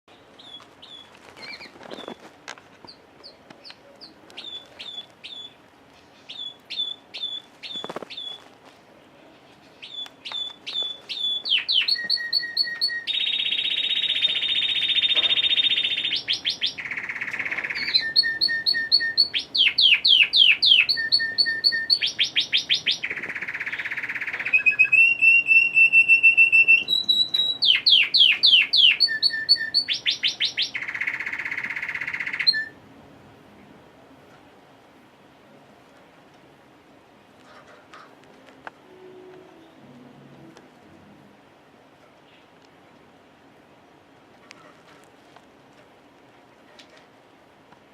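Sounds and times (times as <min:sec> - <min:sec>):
canary singing: 0:00.1 - 0:08.5, 0:09.6 - 0:32.8.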